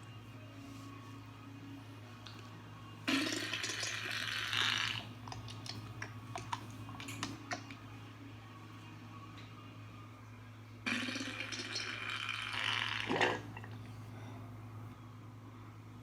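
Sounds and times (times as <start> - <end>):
wet sputtering fart sound: 3.1 - 5.8, 10.9 - 13.5.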